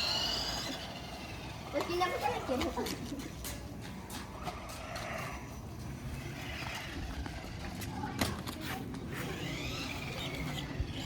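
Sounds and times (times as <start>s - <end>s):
rc car motors whining: 0.0s - 3.0s, 4.4s - 11.0s
clicks and knocks from cars and ball: 6.4s - 10.8s.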